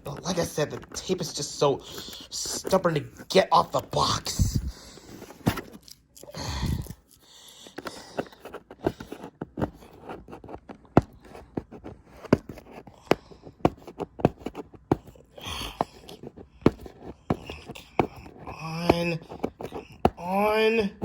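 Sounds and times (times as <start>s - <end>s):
packaging clicks and taps: 7.5s - 20.3s.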